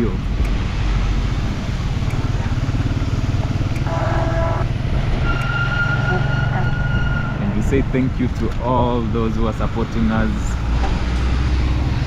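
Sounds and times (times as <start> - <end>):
vehicle engine and road noise: 0.0 - 12.0
short pitched tone: 3.8 - 7.3.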